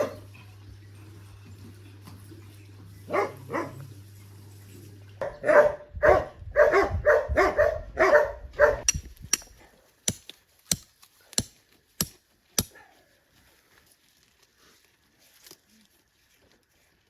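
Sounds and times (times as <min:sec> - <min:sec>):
dog barking: 0:00.0 - 0:00.3, 0:03.1 - 0:03.9, 0:05.2 - 0:08.9.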